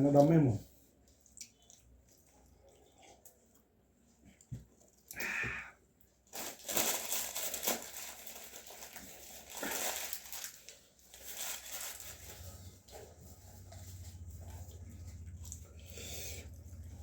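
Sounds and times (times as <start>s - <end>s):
food packaging crinkling: 6.2s - 15.6s.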